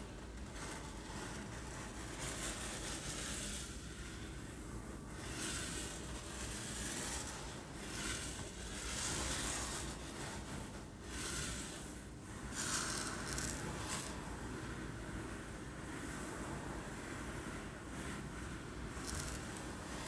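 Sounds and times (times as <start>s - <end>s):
rice grains shaken and rolled: 0.0s - 14.4s, 18.5s - 20.0s.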